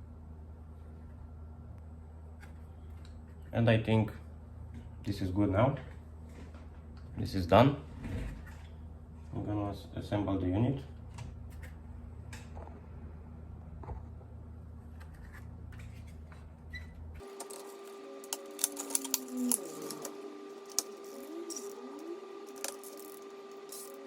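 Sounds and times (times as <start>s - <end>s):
plastic and metal parts clicking: 17.2s - 21.8s
short sliding whirs: 17.2s - 24.0s
steady hum: 17.2s - 24.0s.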